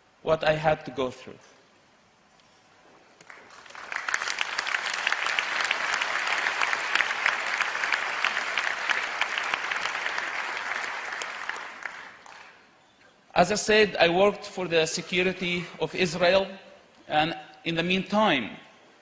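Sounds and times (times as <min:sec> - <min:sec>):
audience applauding: 0:03.2 - 0:12.6.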